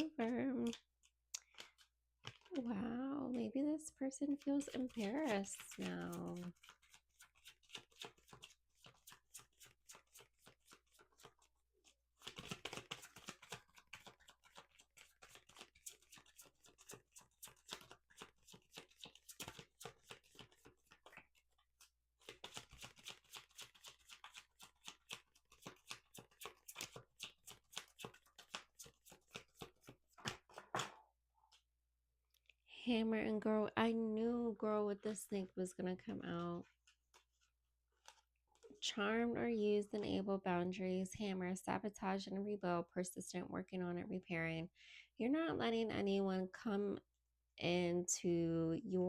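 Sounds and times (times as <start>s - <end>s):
cards being shuffled: 0.6s - 2.6s, 4.3s - 31.6s, 36.7s - 38.8s.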